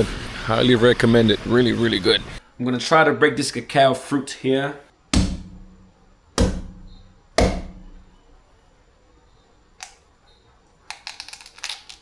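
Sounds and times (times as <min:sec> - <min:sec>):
cacao pod being struck: 0:05.2 - 0:08.2.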